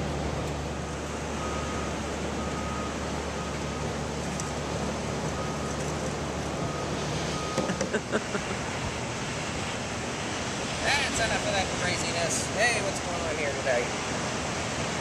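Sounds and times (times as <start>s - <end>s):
heavy machine engine running: 0.0s - 10.7s
reversing alarm beeping: 1.3s - 4.0s, 5.2s - 5.9s, 6.6s - 7.8s.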